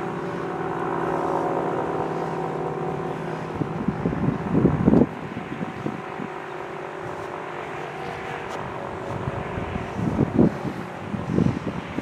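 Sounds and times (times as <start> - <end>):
wind noise on microphone: 3.0 - 7.4, 8.0 - 12.0.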